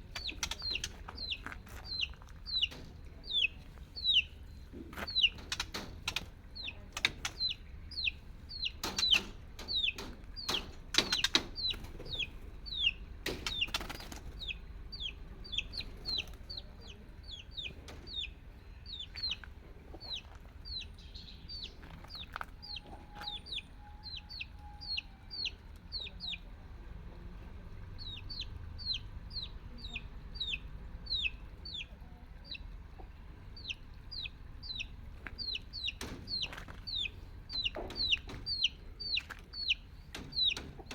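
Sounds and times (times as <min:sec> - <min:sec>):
chick peeping: 0:00.0 - 0:40.9
sharp knocks or rattles: 0:04.7 - 0:07.5, 0:08.5 - 0:12.4, 0:13.2 - 0:14.2, 0:35.8 - 0:40.9.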